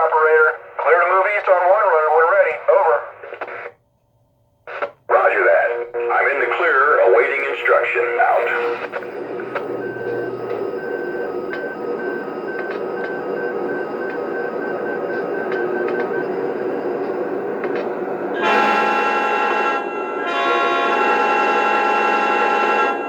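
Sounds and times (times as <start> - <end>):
diesel engine running: 8.3 - 18.5
locomotive bell ringing: 18.3 - 23.0
multi-note locomotive horn: 18.3 - 23.0.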